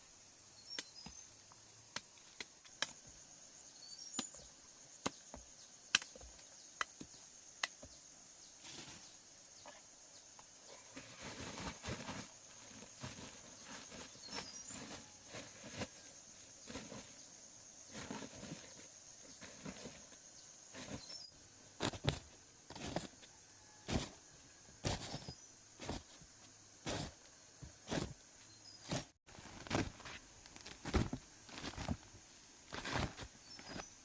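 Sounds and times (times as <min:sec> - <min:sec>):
insects droning: 0:00.0 - 0:34.0
rustling and scraping material: 0:10.7 - 0:26.2, 0:26.8 - 0:27.2, 0:27.8 - 0:32.0.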